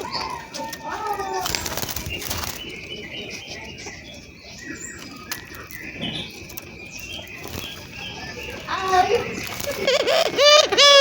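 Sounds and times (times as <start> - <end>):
small birds chirping: 0.0 - 11.0
fluttering rustle: 1.2 - 2.7, 8.6 - 10.3.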